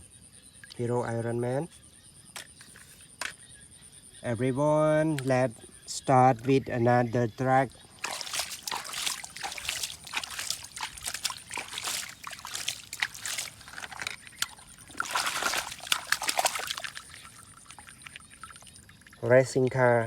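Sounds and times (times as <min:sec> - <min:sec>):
water sloshing and splashing: 0:07.4 - 0:19.5.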